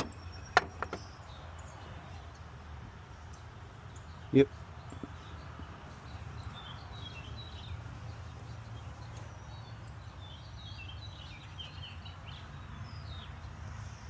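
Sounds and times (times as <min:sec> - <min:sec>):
songbirds chirping: 0:00.0 - 0:14.0.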